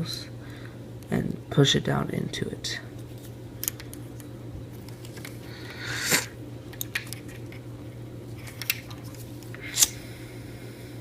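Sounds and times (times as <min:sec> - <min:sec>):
steady low hum: 0:00.0 - 0:11.0
lighter rasp and click: 0:09.7 - 0:10.0.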